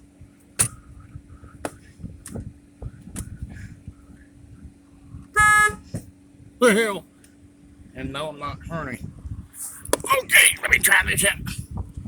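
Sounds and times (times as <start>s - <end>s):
loud pitched tone: 5.4s - 5.8s.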